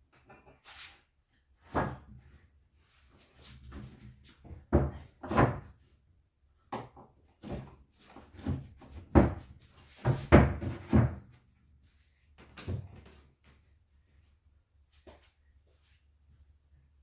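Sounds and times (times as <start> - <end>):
wooden panels knocking and thudding: 3.8 - 5.8, 6.7 - 11.4.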